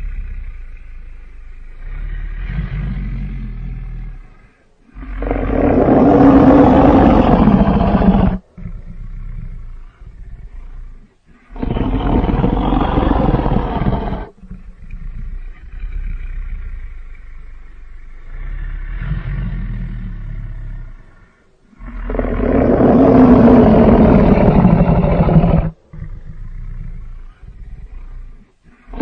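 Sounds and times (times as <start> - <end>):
monster roaring: 5.0 - 8.4, 11.5 - 14.4, 21.8 - 25.8
monster growling: 5.0 - 8.8, 11.5 - 14.4, 21.8 - 29.0.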